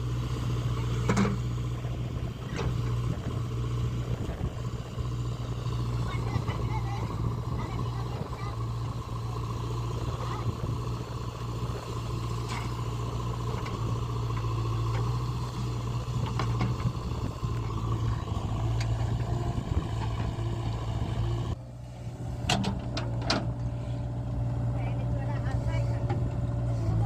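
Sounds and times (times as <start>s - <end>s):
heavy diesel engine running: 0.0s - 27.0s.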